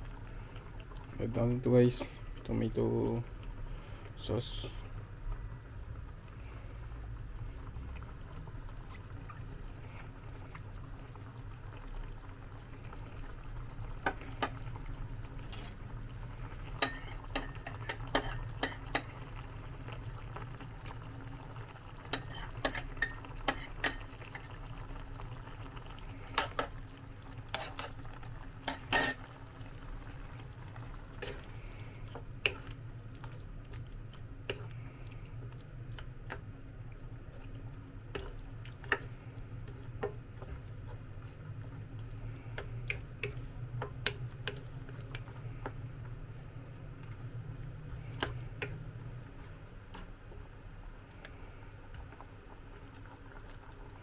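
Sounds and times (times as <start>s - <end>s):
utensil stirring food in pot: 12.6s - 54.0s
utensil clinking against pot: 16.8s - 19.2s, 22.1s - 24.4s, 28.6s - 29.3s.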